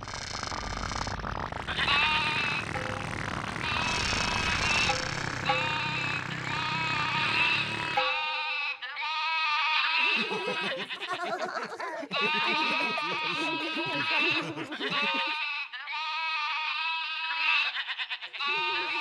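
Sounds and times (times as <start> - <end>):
steady low drone: 0.0 - 8.0
sheep bleating: 1.6 - 19.0.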